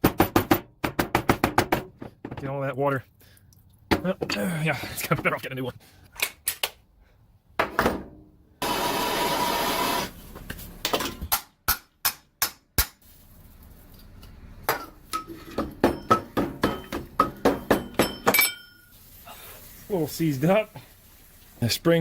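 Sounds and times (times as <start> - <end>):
hammer tapping on metal: 14.7 - 18.7.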